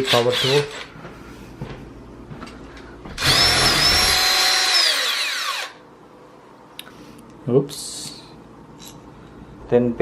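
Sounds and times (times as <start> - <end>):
power drill motor whine: 0.1 - 0.9, 3.2 - 5.8.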